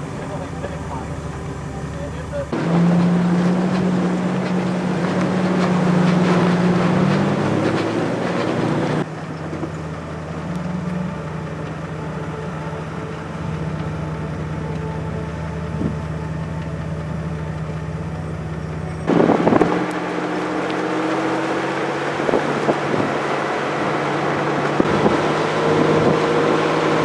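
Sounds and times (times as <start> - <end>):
loud rushing noise: 0.0 - 9.1, 19.1 - 27.0
vehicle engine running: 0.0 - 27.0.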